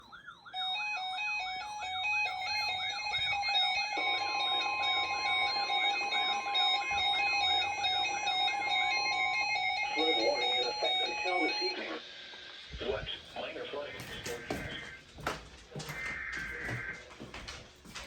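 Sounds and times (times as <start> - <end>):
stepping beeps: 13.1 - 18.0.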